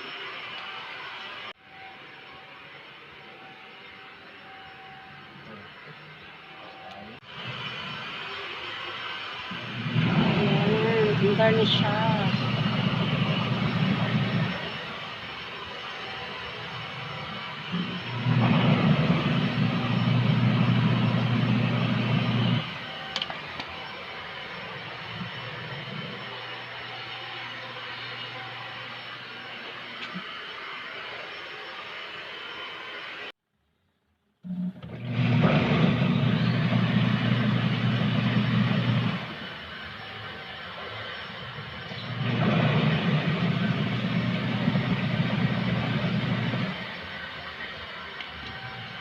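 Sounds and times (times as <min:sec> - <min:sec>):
washing machine motor humming: 0:07.2 - 0:31.2, 0:34.5 - 0:49.0.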